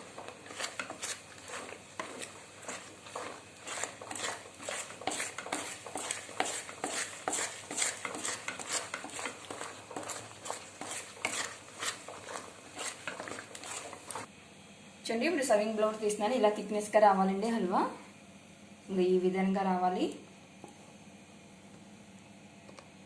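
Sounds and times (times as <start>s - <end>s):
spoon scraping a pan: 0.0s - 14.3s.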